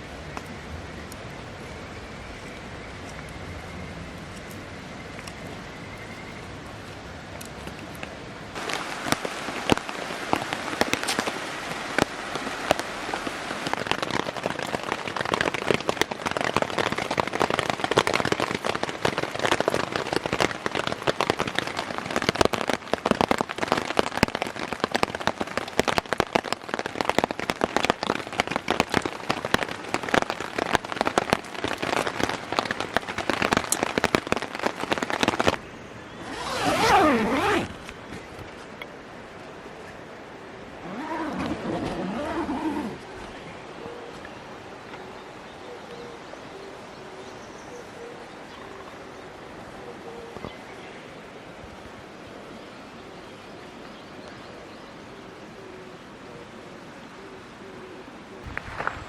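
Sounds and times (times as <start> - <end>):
campfire crackling and popping: 4.1 - 38.9, 58.4 - 59.0.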